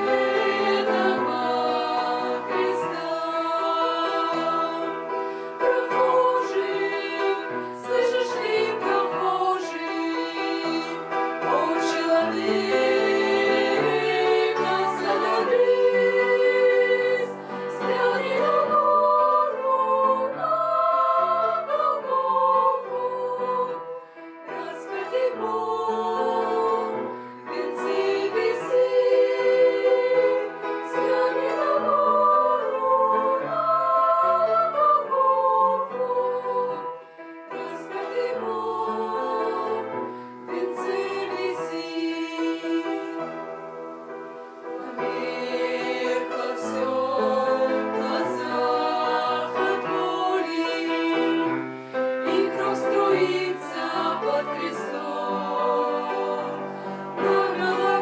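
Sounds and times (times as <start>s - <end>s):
women singing in harmony: 0.0s - 58.0s.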